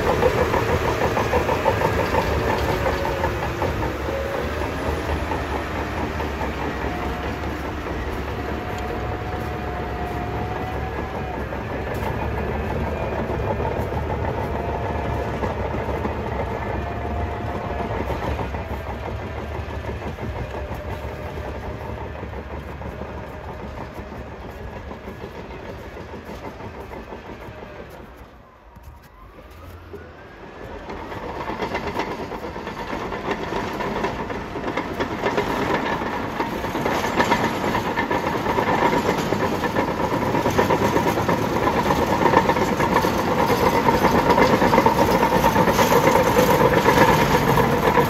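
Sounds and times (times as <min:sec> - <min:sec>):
wavering squeal: 0:00.0 - 0:25.9
bulldozer diesel engine: 0:00.0 - 0:48.0
bulldozer tracks clattering: 0:00.0 - 0:48.0.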